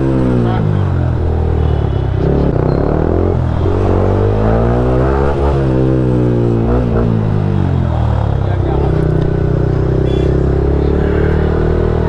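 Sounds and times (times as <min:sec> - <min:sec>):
motorcycle engine revving: 0:00.0 - 0:12.0.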